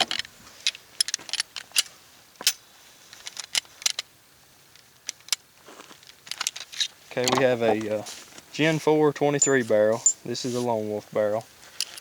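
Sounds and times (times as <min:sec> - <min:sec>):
pistol parts clicking and clinking: 0:00.0 - 0:02.6, 0:03.2 - 0:04.1, 0:04.8 - 0:07.6.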